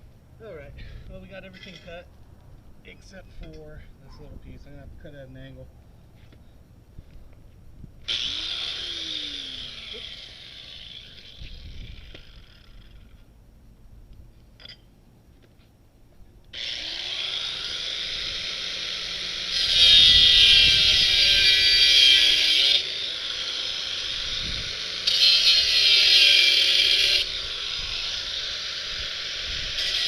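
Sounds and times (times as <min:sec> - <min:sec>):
power tool cutting steel tube: 0:08.1 - 0:13.2, 0:16.6 - 0:30.0.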